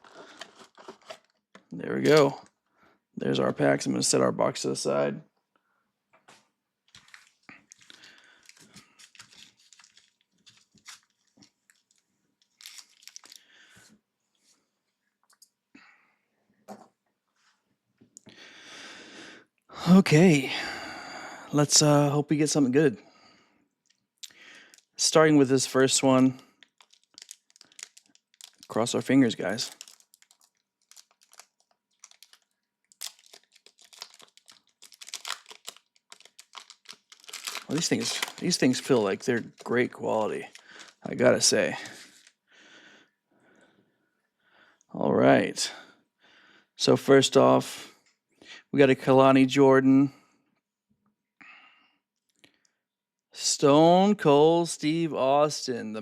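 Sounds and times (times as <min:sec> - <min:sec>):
foil wrappers crinkling: 0:07.0 - 0:13.5, 0:26.6 - 0:42.4.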